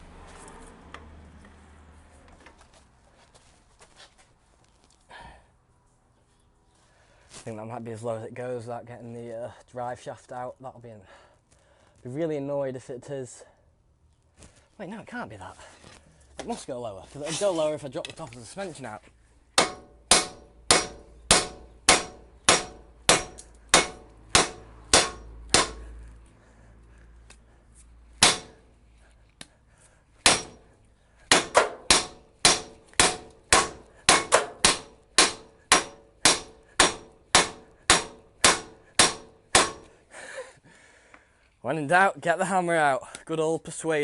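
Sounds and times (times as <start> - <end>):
hammer striking metal: 19.6 - 25.9, 28.2 - 28.6, 30.2 - 30.7, 31.3 - 39.9.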